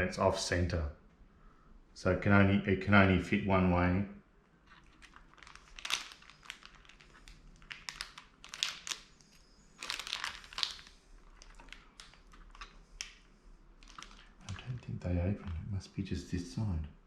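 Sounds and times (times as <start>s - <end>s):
plastic packaging crinkling: 4.6s - 15.7s.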